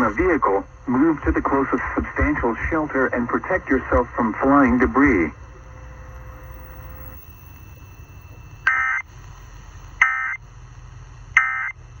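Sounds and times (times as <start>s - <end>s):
low steady hum: 0.0s - 12.0s
warbling digital data tones: 3.4s - 11.7s.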